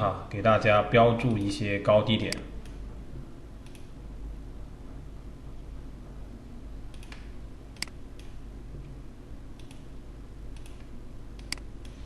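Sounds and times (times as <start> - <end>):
low steady hum: 0.0 - 12.0
computer mouse clicks: 3.6 - 3.9, 6.9 - 8.4, 9.6 - 9.9, 10.5 - 12.0.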